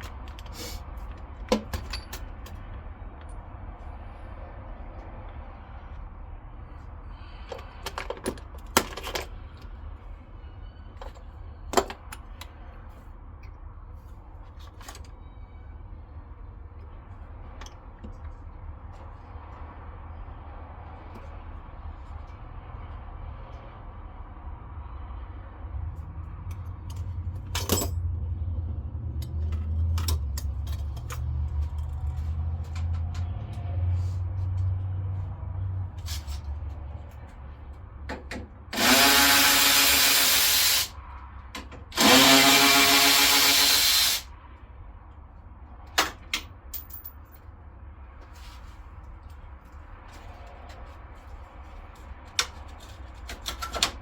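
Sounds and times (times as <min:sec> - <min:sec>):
metal tools clinking and clattering: 0:01.6 - 0:02.6, 0:27.4 - 0:28.0.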